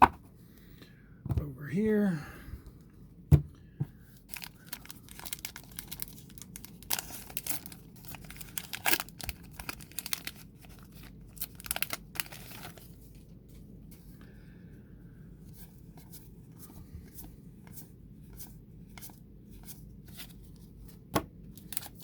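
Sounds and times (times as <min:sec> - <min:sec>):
foil wrapper tearing and crinkling: 0:04.3 - 0:12.9, 0:21.6 - 0:22.0.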